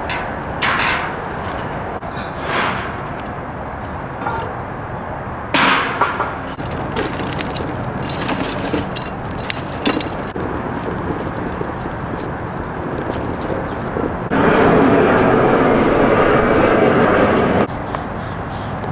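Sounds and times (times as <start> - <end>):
wood cracking and snapping: 6.6 - 17.7.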